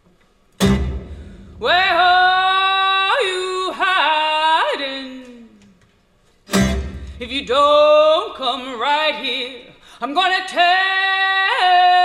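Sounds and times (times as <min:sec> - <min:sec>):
strummed chord: 0:00.6 - 0:02.3.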